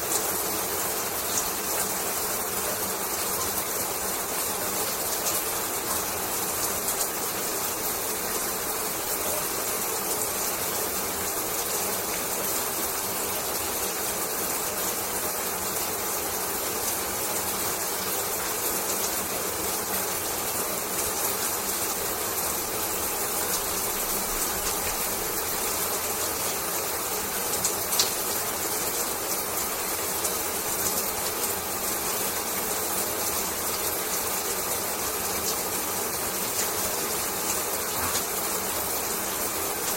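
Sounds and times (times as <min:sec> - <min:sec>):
shower water splashing: 0:14.9 - 0:39.9.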